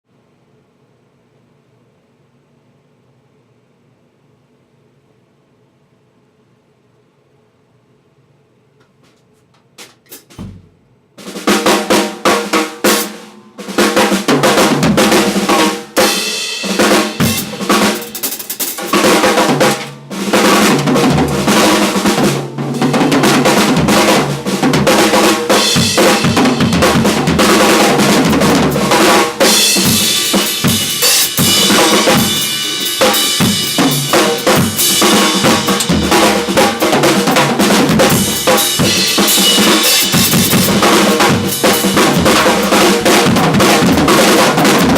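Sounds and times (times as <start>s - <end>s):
drum kit playing: 9.8s - 44.9s.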